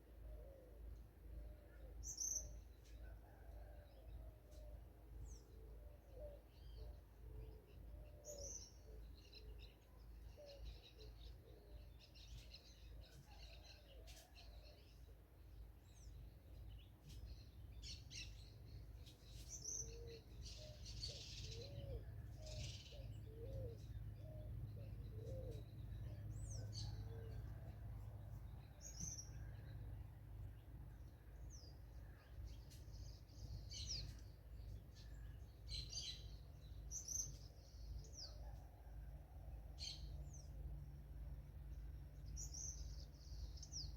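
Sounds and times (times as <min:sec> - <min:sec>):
faint low rumble: 0:14.6 - 0:43.9.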